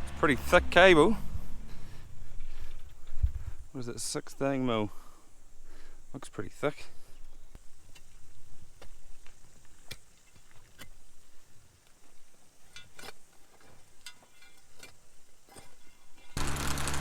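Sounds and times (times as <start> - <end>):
loud engine running: 0.0 - 2.2, 16.4 - 17.0.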